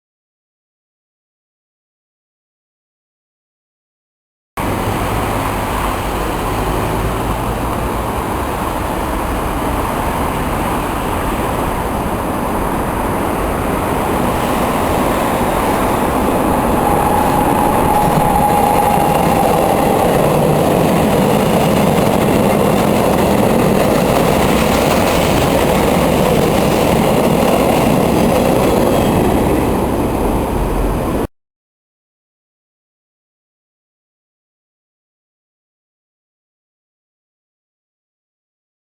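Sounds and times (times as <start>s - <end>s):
locomotive engine under load: 4.6s - 31.3s
train wheels rolling on rails: 4.6s - 31.3s
faint thin squeal: 15.9s - 20.3s.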